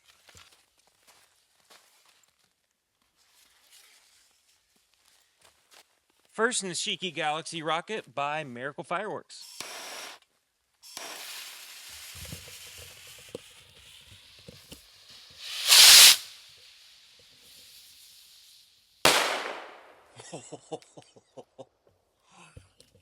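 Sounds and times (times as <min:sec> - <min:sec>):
fuse hissing: 0:09.4 - 0:10.2, 0:10.9 - 0:18.8
firework shell bursting boom: 0:15.4 - 0:16.5, 0:19.1 - 0:20.2
rocket launching whoosh: 0:15.4 - 0:16.5, 0:19.1 - 0:20.1.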